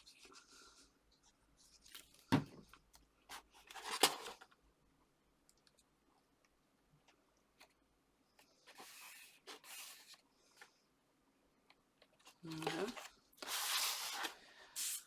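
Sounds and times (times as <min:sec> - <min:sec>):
faint small clicks: 0:05.4 - 0:07.8.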